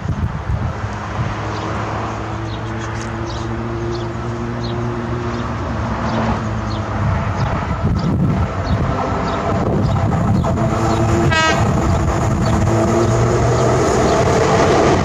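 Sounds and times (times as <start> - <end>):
train rumbling: 0.0 - 15.0
small birds chirping: 2.4 - 11.2.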